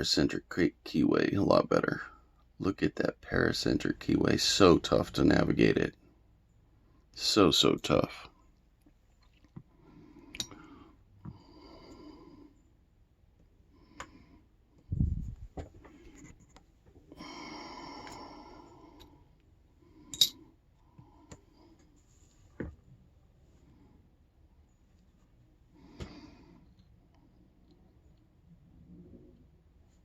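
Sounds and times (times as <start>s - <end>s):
person breathing through nose: 17.1s - 19.2s.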